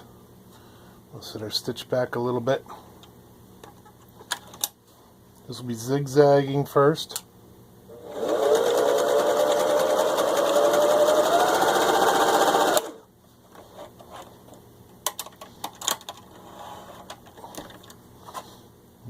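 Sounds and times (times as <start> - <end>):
sewing machine motor whine: 7.9 - 13.0.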